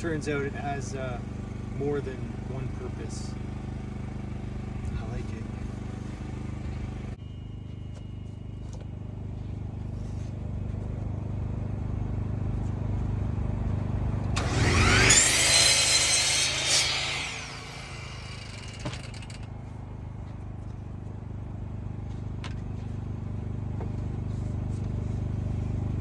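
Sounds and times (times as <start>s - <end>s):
electric saw cutting wood: 14.3s - 19.5s.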